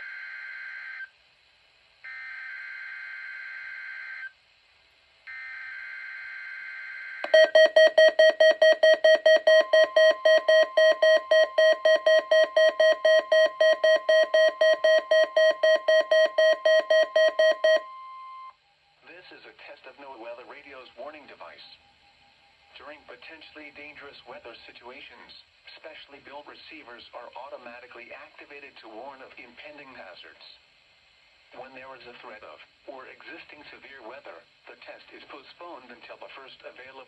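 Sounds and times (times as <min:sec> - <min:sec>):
rapid alarm beeps: 0:07.2 - 0:18.5
steady warning alarm tone: 0:07.2 - 0:18.5.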